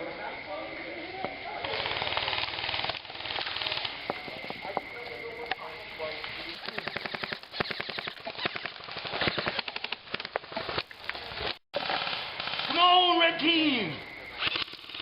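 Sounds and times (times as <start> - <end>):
airsoft guns firing bursts: 5.6 - 10.5.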